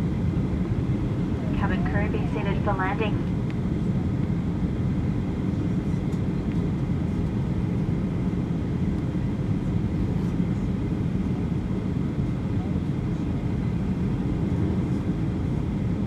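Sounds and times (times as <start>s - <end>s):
airplane cabin engine rumble: 0.0s - 16.0s.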